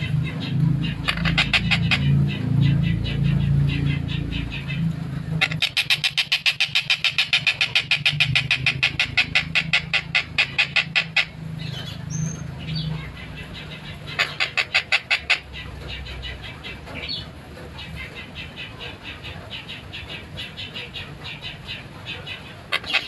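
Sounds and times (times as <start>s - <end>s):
kingfisher calling in harsh notes: 0.0s - 17.2s
steady low hum: 0.0s - 23.0s.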